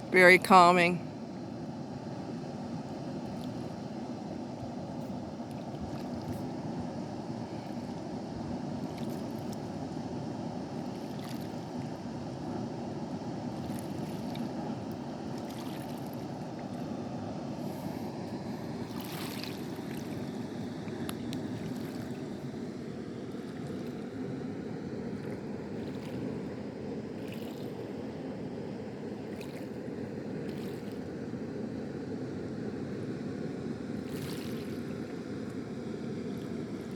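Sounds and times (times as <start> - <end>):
sharp water splashes: 15.3 - 16.3, 18.9 - 20.2.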